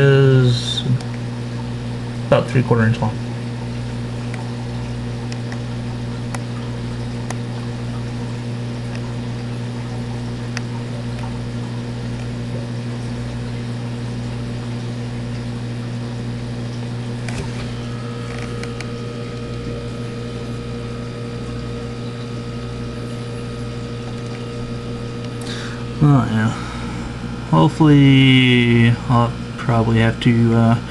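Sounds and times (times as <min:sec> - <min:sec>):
aquarium pump humming: 0:00.0 - 0:30.9.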